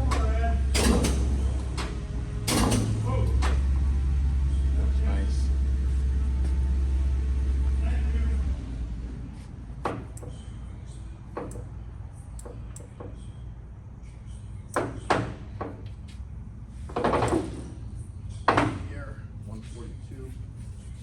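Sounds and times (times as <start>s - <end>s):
low steady hum: 0.0s - 21.0s
loud clunk: 0.8s - 3.6s.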